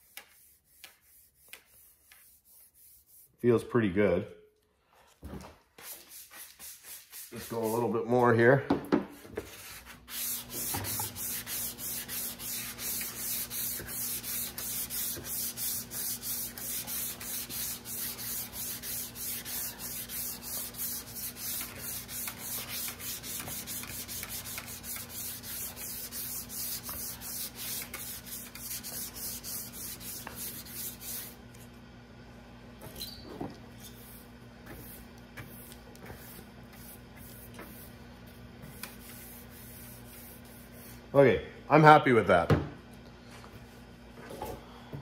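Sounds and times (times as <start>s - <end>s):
sandpaper rubbing back and forth: 0.0s - 3.4s, 5.8s - 8.0s, 9.4s - 31.4s, 38.8s - 41.0s.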